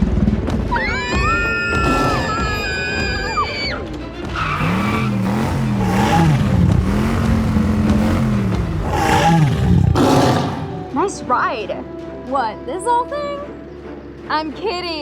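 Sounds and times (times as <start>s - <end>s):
background music: 0.0s - 15.0s
tyres skidding: 0.5s - 11.2s
car engine revving: 0.6s - 11.0s.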